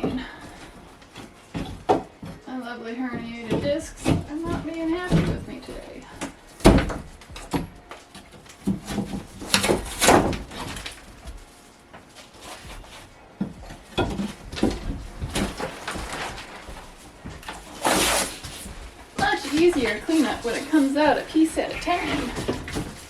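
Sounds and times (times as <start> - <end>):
material crunching: 5.4 - 23.0
demolition knocks and cracks: 8.6 - 23.0.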